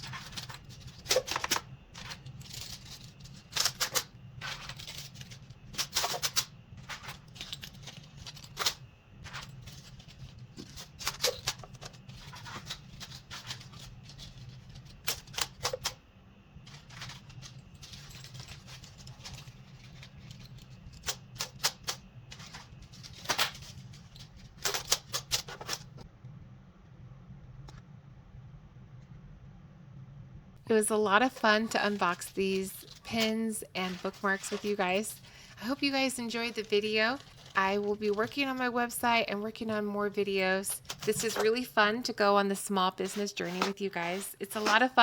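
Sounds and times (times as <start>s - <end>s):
sharp clicks and clinks of handling: 0.0s - 16.0s, 16.7s - 25.9s, 40.7s - 41.8s
steady low hum: 0.0s - 45.0s.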